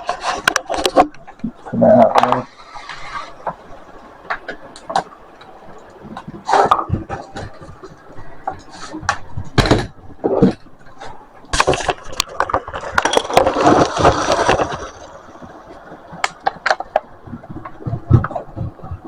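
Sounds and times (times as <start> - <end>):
rustling and crinkling: 0.0 - 19.0
sharp handling clicks and knocks: 4.2 - 19.0.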